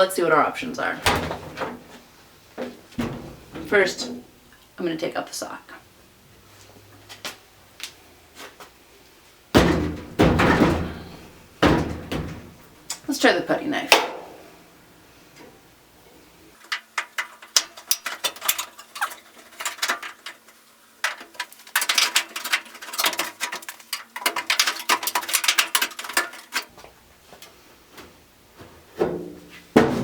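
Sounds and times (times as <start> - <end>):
taps on metal panel: 13.9 - 14.3.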